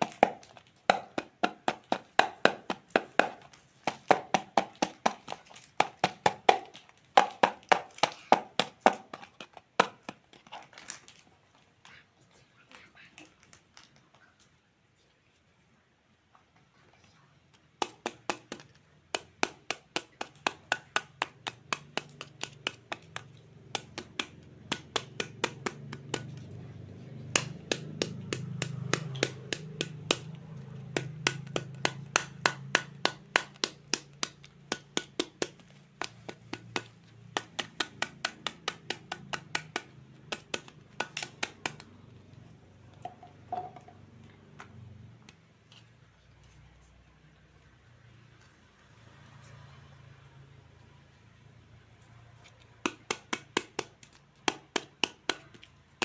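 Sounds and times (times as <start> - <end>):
toy knife clicking on plastic fruit: 27.2 - 42.0.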